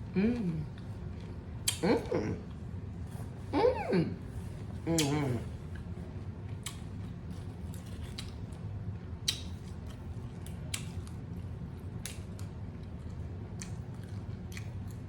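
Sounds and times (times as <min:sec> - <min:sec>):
chewing crunchy chips: 0:05.0 - 0:15.0.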